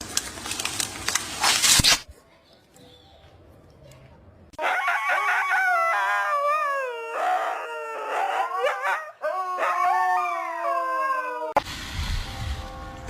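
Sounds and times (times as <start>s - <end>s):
dog howling: 4.6s - 11.6s.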